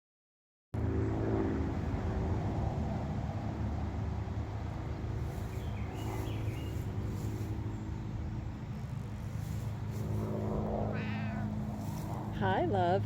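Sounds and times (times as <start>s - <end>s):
steady low rumble: 0.8s - 13.0s
songbird chirping: 5.3s - 8.0s.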